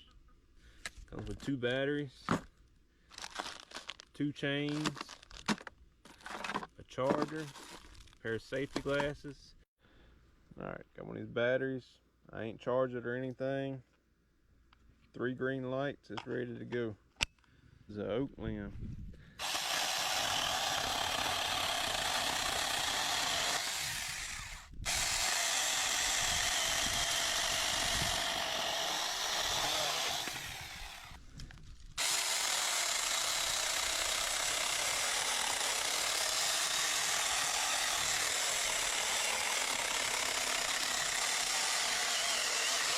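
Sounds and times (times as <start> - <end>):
battery chainsaw cutting wood: 19.4 - 31.2, 32.0 - 42.9.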